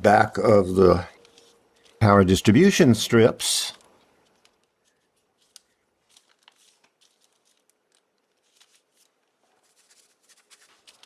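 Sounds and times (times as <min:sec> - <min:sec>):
small parts clicking and rustling: 0:01.2 - 0:02.0, 0:03.7 - 0:09.2.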